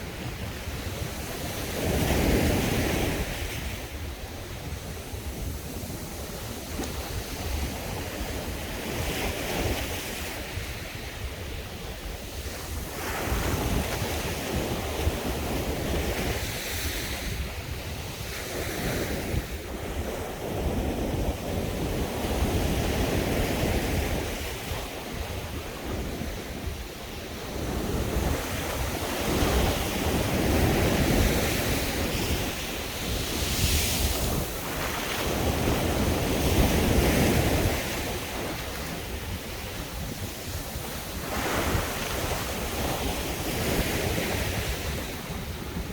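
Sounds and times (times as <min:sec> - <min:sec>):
waves breaking on beach: 0:00.0 - 0:45.9
wind rumbling on microphone: 0:00.0 - 0:45.9.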